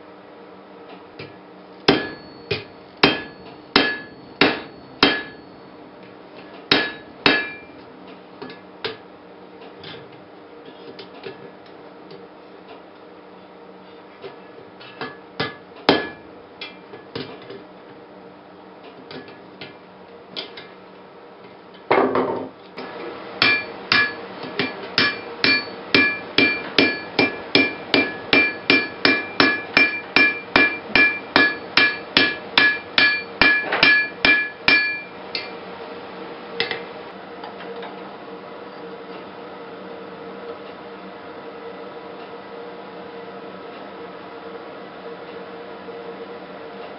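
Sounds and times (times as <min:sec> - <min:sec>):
hammer striking anvil: 0:01.9 - 0:05.4, 0:06.7 - 0:07.7, 0:15.4 - 0:16.2, 0:23.4 - 0:35.5.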